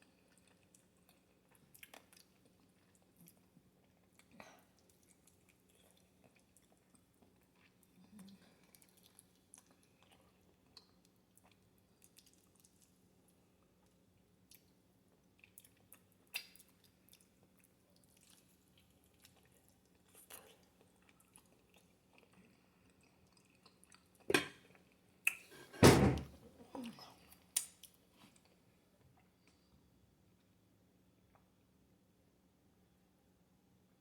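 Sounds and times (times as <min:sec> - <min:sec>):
chewing: 0:00.0 - 0:13.0, 0:13.6 - 0:25.5
knocks and heavy thump: 0:25.7 - 0:26.4.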